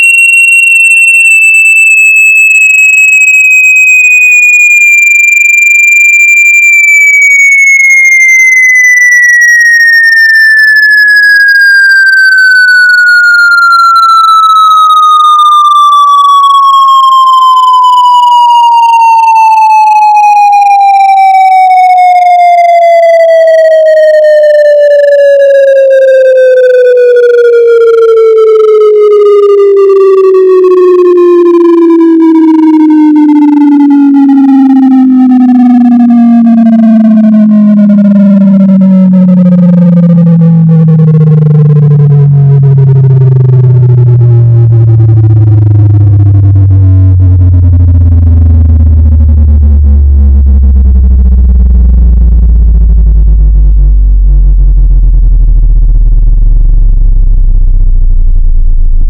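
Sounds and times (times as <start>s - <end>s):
buzzy electronic tone sweeping down: 0.0s - 7.6s, 9.4s - 59.0s.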